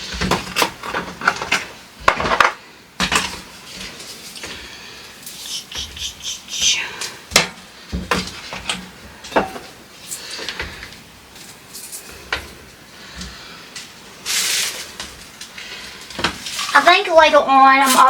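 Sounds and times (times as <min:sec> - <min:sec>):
dishes clattering: 0:07.4 - 0:09.8.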